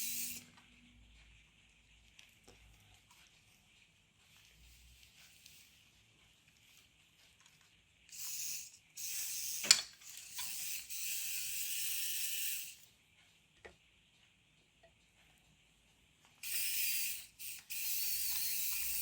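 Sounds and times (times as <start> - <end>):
toy gear motors whirring: 0.0 - 0.5, 8.1 - 12.9, 16.4 - 19.0.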